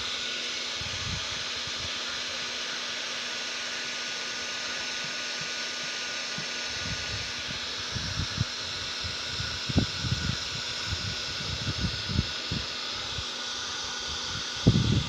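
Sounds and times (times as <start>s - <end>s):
air blowing hiss: 6.4s - 15.0s.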